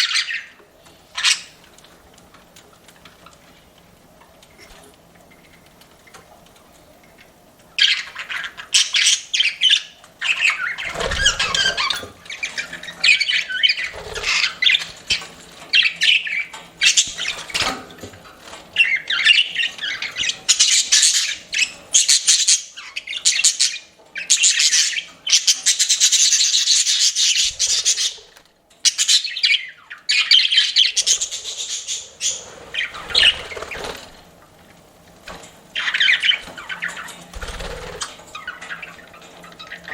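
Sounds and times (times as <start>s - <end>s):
budgerigars chirping: 0.0s - 1.6s, 7.8s - 17.7s, 18.7s - 34.2s, 35.7s - 39.9s.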